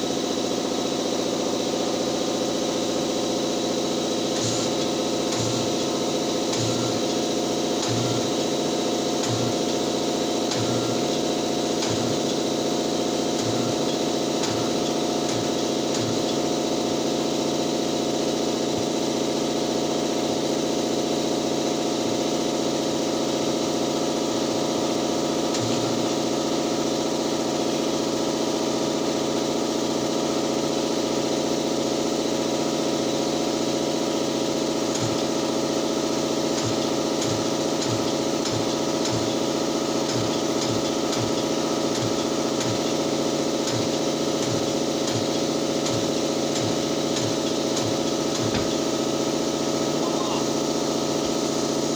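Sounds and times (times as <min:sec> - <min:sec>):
air leak hissing: 0:04.4 - 0:16.6.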